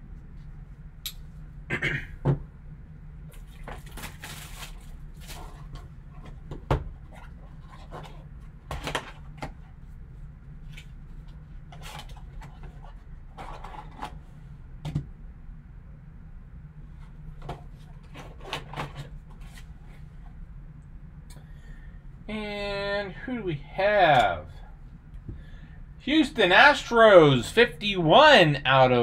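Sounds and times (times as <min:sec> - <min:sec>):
cardboard and plastic rustling: 0:03.3 - 0:09.7, 0:10.6 - 0:14.3, 0:17.0 - 0:20.2.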